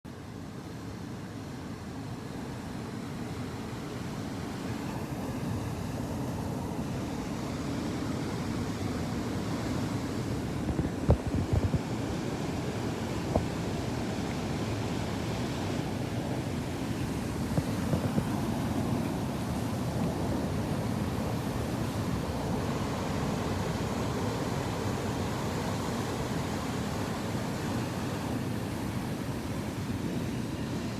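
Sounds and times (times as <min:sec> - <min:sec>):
sea waves washing ashore: 0:00.4 - 0:30.9
wind buffeting microphone: 0:10.3 - 0:14.2, 0:15.9 - 0:22.6.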